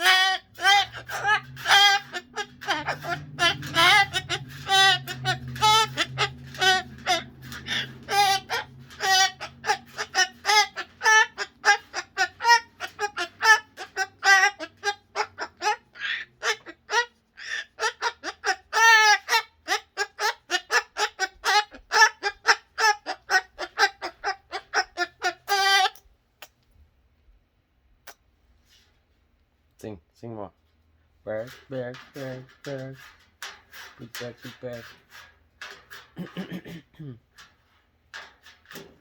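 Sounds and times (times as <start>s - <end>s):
cockatoo calling: 0.0s - 26.1s.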